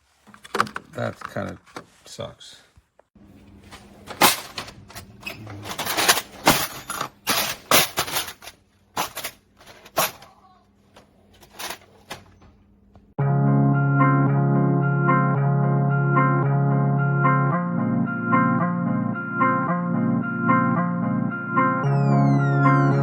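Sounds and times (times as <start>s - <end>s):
plastic trays clattering: 0.2s - 2.0s, 3.5s - 12.7s
music: 13.2s - 23.0s.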